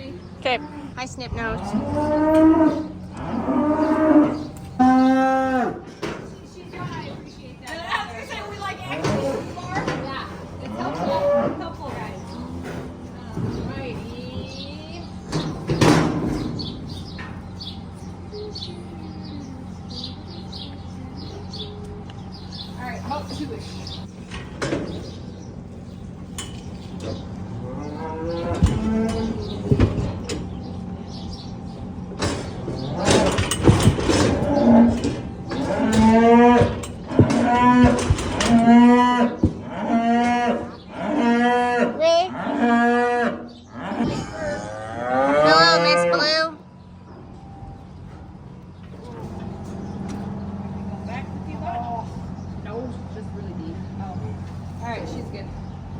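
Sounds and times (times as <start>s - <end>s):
small birds chirping: 0.0s - 55.9s
steady low hum: 0.0s - 55.9s
cattle mooing: 0.7s - 5.9s, 8.6s - 14.1s, 27.5s - 30.1s, 32.7s - 46.6s
clatter of sharp knocks: 32.2s - 38.7s.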